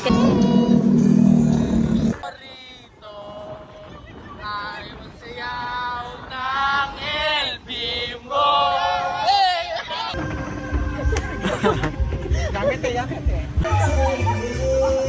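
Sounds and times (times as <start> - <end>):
voices singing held notes: 0.0 - 10.8.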